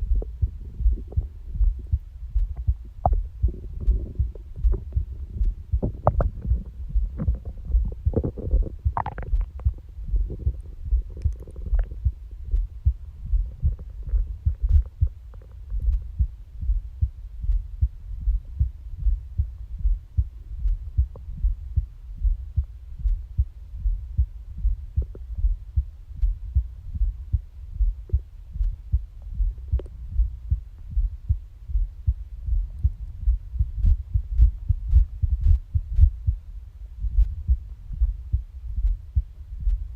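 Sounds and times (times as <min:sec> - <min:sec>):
heartbeat: 0:00.0 - 0:39.9
stomach growling: 0:05.8 - 0:12.1.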